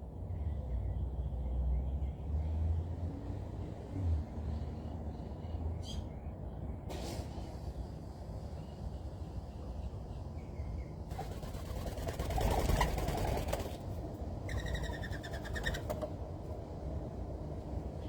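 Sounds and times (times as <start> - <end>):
rapid rattling bird call: 11.1 - 13.9, 14.5 - 16.1.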